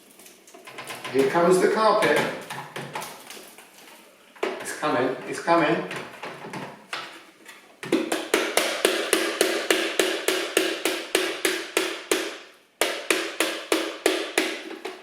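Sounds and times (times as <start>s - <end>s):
plastic cartridge knocking: 5.8s - 7.1s, 7.8s - 12.3s.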